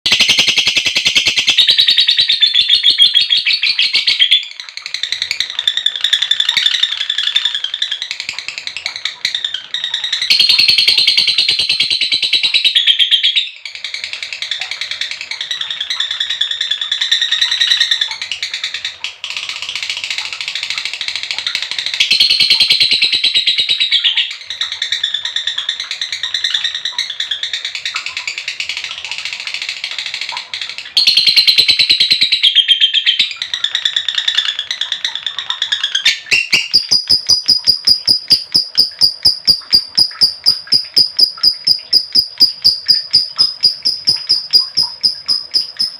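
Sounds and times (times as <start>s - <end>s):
lovebird chattering trill: 9.0s - 18.9s, 31.0s - 45.9s.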